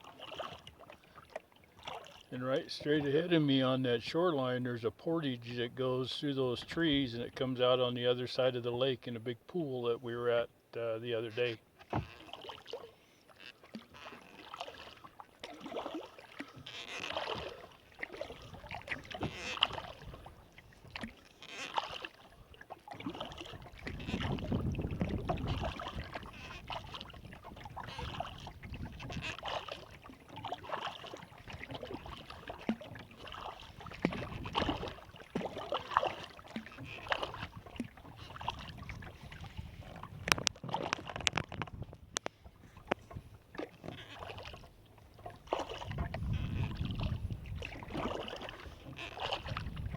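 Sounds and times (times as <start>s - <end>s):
paddle strokes in water: 0.0s - 49.9s
water splashing and dripping: 12.0s - 39.5s, 43.5s - 49.9s.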